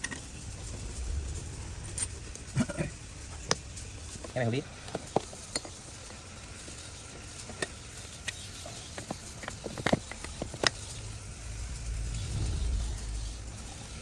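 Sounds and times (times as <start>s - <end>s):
low rumble: 0.4s - 4.0s, 10.8s - 14.0s.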